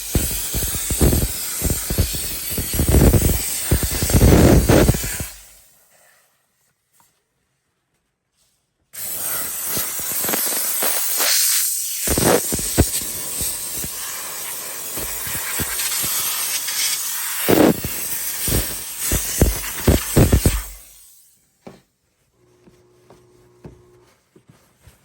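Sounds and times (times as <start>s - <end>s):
steam jet popping and knocking: 0.0s - 5.7s, 9.0s - 21.1s
steam cleaner hissing: 0.0s - 6.3s, 9.0s - 21.4s.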